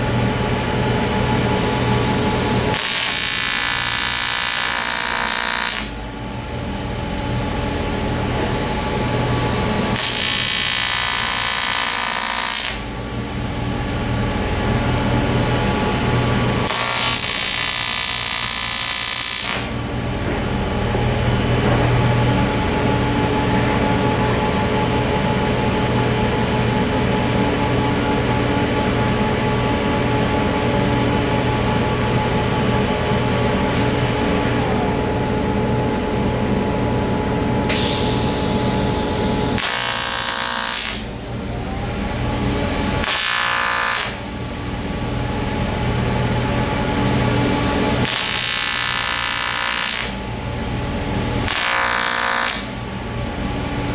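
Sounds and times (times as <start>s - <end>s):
welding arc buzzing: 0.0s - 6.1s, 7.2s - 26.6s, 30.2s - 53.9s
high-pitched welding hiss: 2.7s - 6.0s, 10.0s - 12.9s, 37.6s - 41.1s, 43.0s - 44.2s, 48.1s - 50.2s.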